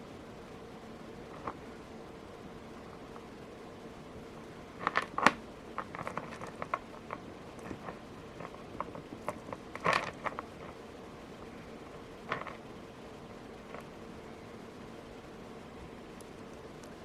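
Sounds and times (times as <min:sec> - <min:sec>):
faint steady hum: 0:00.0 - 0:17.0
fingers tying thread knots: 0:04.7 - 0:10.8.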